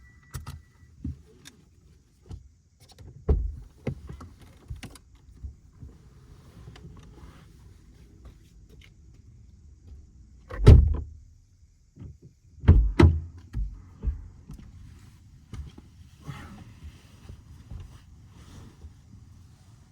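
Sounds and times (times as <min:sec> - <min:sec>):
car doors shutting: 0:10.5 - 0:11.1.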